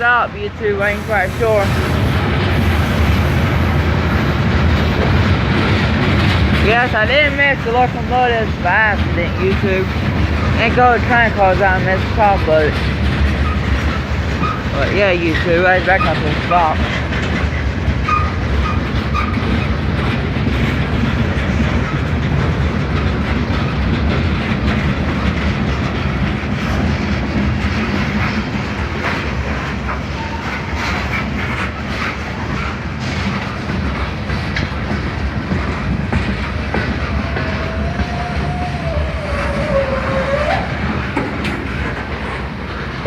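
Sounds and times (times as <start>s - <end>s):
railroad cars rumbling past: 0.0s - 43.0s
wheels clicking over rail joints: 0.0s - 43.0s.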